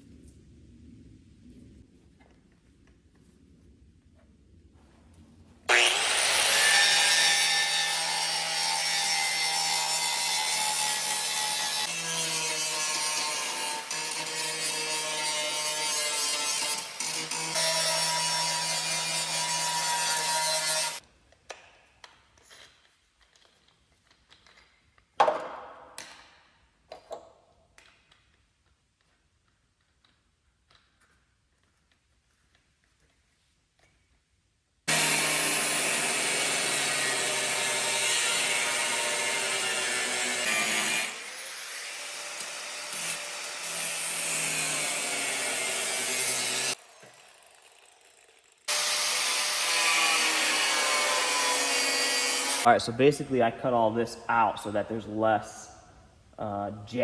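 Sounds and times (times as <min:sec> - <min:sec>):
power tool cutting sheet steel: 0:05.7 - 0:21.0, 0:34.9 - 0:52.7.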